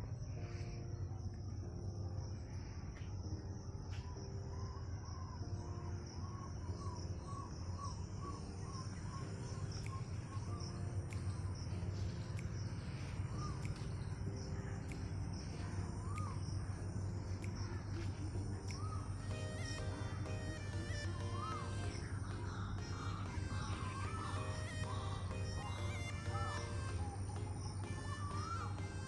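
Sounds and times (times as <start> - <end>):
insect drone: 0.0 - 29.0
bird chirping: 0.2 - 29.0
faint clicks: 9.7 - 19.8.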